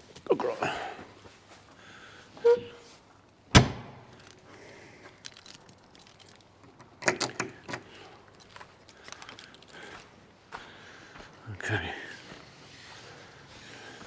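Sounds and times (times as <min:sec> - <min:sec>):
metal jangling and clinking: 0:05.1 - 0:10.1.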